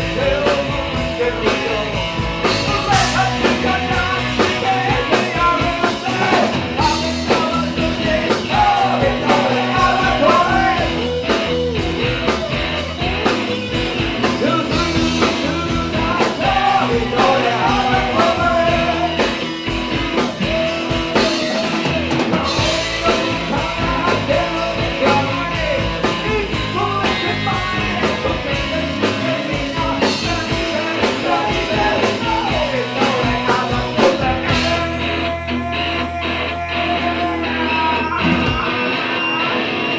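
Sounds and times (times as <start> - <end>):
rock band playing: 0.0 - 39.9.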